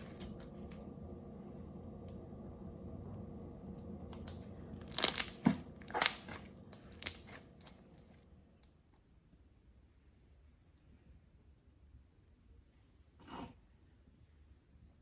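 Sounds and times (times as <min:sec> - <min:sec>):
hands squeezing slime: 0:04.1 - 0:08.1
sticky slime pops and crackles: 0:04.2 - 0:07.4.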